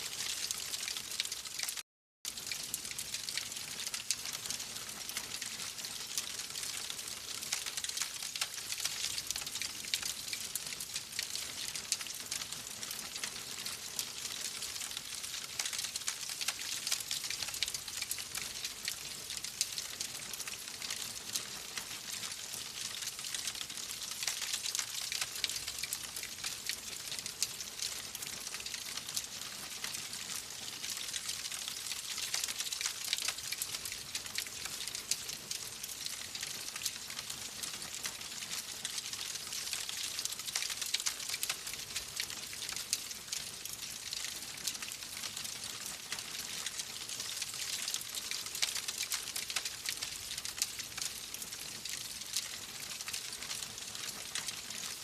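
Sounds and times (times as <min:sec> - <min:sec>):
fire crackling and popping: 0:32.0 - 0:51.5.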